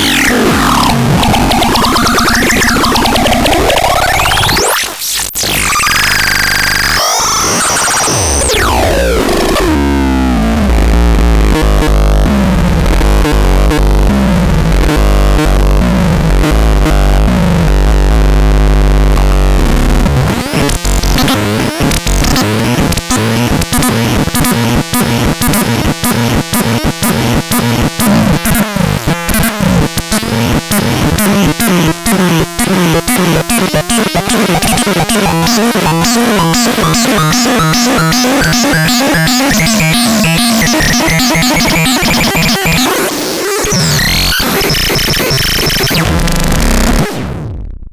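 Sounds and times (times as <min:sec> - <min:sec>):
droning synth bass: 0:08.6 - 0:21.3, 0:23.0 - 0:43.0
sharp repeated synth pulses: 0:23.6 - 0:46.1
sweeping synthesizer tones: 0:32.2 - 0:43.1.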